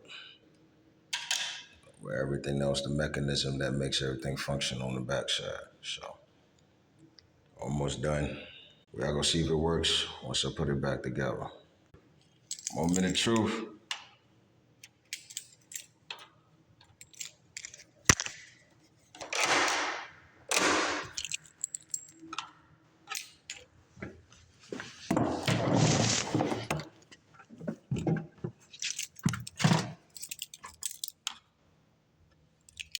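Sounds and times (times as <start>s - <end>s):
keys jangling: 12.5s - 13.5s, 15.1s - 18.0s, 21.0s - 22.5s, 23.1s - 23.7s, 28.6s - 31.4s, 32.7s - 33.0s
rustling: 24.2s - 27.9s.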